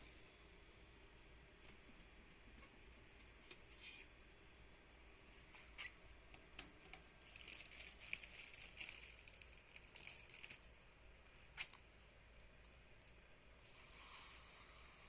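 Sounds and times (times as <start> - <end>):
light crackles: 5.4 - 14.3.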